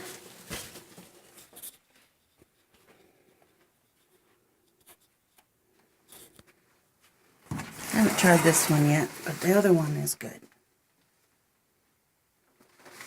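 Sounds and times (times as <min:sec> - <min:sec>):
faint rustles and clicks: 0:00.0 - 0:10.3.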